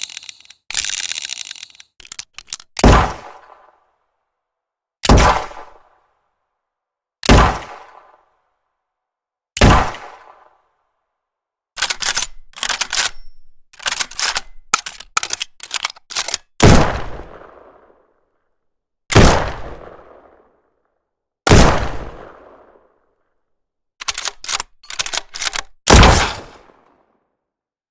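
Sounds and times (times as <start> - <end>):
automatic gunfire: 11.8 - 17.0, 24.0 - 26.7
single gunshots with echo: 25.9 - 26.7.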